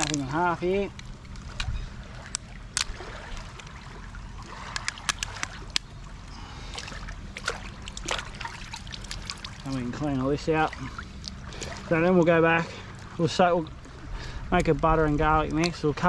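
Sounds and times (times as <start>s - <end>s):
crab shell cracking: 0.9s - 3.8s, 4.7s - 5.9s.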